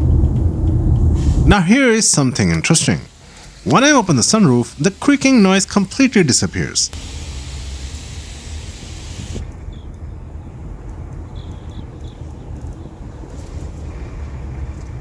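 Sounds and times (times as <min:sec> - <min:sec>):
wind hiss: 0:01.0 - 0:09.6.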